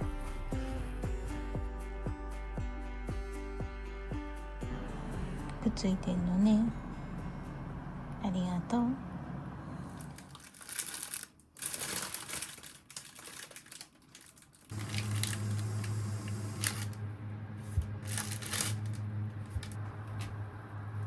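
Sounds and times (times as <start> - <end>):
low hum: 0.0 - 10.4, 14.7 - 21.0
objects clattering and rustling: 17.7 - 20.3.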